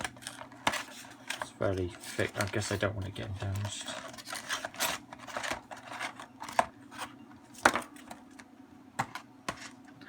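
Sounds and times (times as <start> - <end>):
cardboard box rustling and scraping: 3.4 - 7.8.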